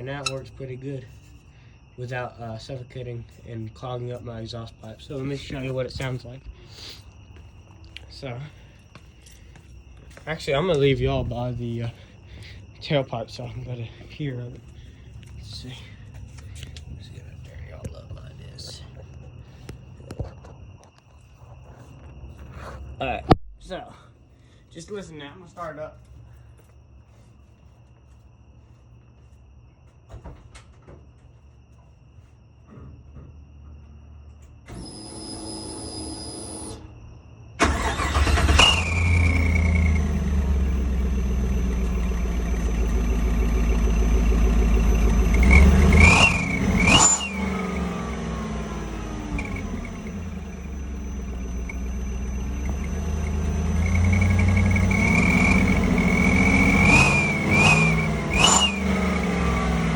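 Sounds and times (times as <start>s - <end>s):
engine cranking on starter: 34.7s - 36.9s, 37.6s - 59.9s
exhaust whistle: 34.7s - 36.9s, 37.6s - 59.9s
truck engine running loud: 37.8s - 59.9s.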